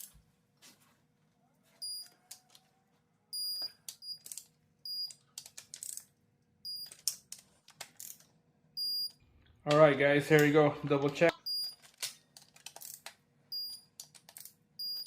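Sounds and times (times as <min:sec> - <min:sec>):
short high-pitched beeps: 0:08.8 - 0:09.2.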